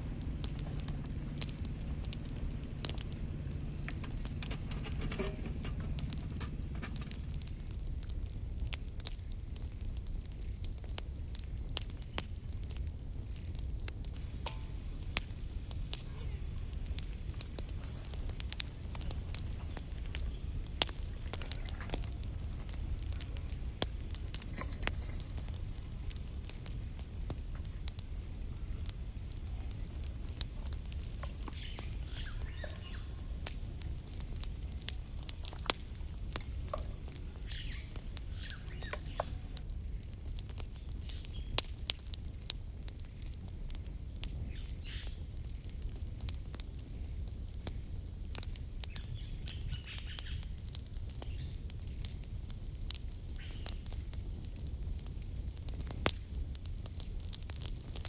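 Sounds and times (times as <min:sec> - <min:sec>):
steady low rumble: 0:00.0 - 0:41.9
sharp clicks and pops: 0:00.2 - 0:08.8, 0:13.8 - 0:42.5
bird calls: 0:31.4 - 0:34.3, 0:37.3 - 0:39.6.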